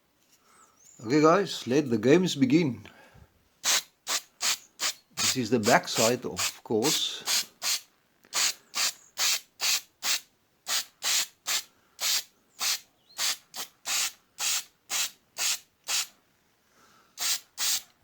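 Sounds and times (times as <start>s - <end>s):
spray can hissing bursts: 3.6s - 16.1s, 17.2s - 18.0s.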